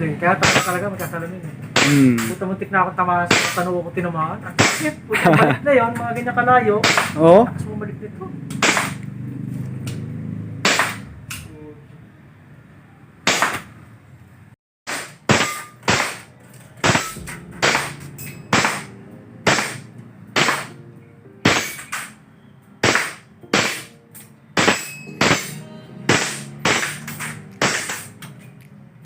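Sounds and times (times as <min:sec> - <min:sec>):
airsoft pistol shots: 0:00.4 - 0:00.8, 0:01.8 - 0:02.4, 0:03.3 - 0:03.7, 0:04.6 - 0:04.9, 0:06.8 - 0:07.2, 0:08.6 - 0:09.0, 0:10.6 - 0:11.1, 0:13.2 - 0:13.7, 0:14.9 - 0:20.8, 0:21.4 - 0:22.2, 0:22.8 - 0:23.9, 0:24.6 - 0:28.2.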